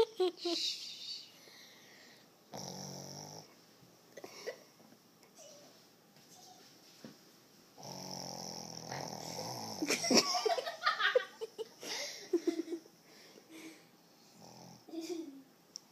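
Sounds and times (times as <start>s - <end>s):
animal snoring: 2.5s - 3.6s, 7.8s - 10.0s, 14.2s - 14.9s.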